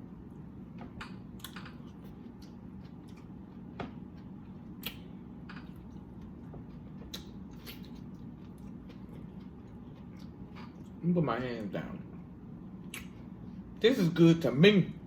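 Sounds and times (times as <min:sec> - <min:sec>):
low steady hum: 0:00.0 - 0:15.0
chewing clicks and smacks: 0:01.4 - 0:11.0, 0:12.8 - 0:13.2.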